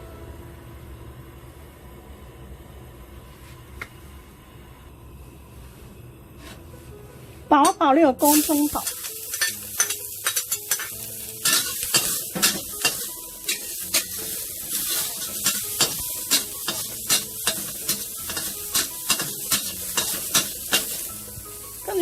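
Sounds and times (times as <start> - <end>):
shallots sizzling in oil: 7.7 - 22.0
spatula tapping and scraping pan: 14.7 - 21.0.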